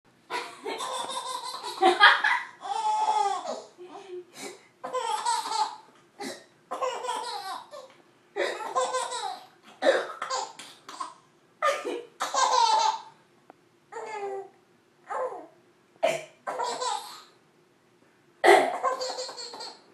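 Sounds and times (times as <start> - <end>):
baby laughing: 0.3 - 4.0, 4.8 - 5.8, 6.7 - 9.5, 10.1 - 13.1, 16.5 - 17.4, 18.6 - 19.9
woman making mock coughing noises: 18.4 - 18.8.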